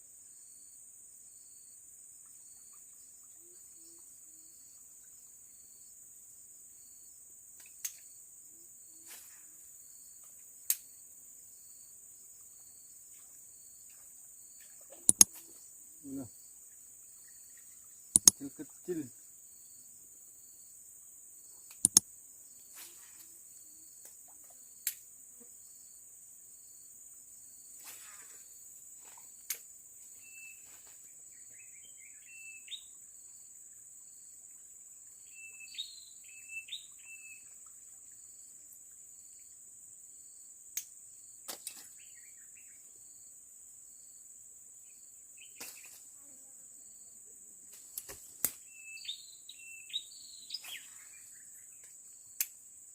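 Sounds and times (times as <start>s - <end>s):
insects droning: 0.0s - 52.9s
bird chirps: 15.1s - 15.3s, 17.2s - 18.5s, 35.3s - 37.5s, 48.6s - 51.9s
sharp clicks or knocks: 15.1s - 15.3s, 18.2s - 18.4s.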